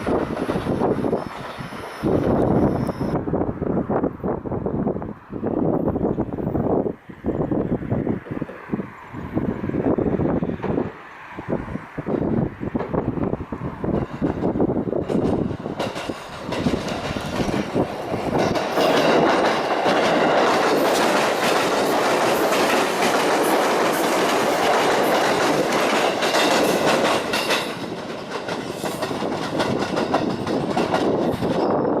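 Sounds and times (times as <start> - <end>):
electric train passing: 0.0 - 32.0
wheels clicking over rail joints: 12.7 - 32.0.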